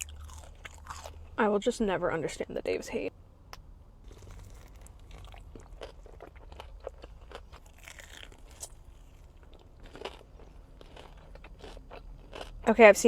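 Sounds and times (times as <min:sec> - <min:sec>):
chewing crunchy fried food: 0:00.0 - 0:01.4, 0:04.0 - 0:12.7.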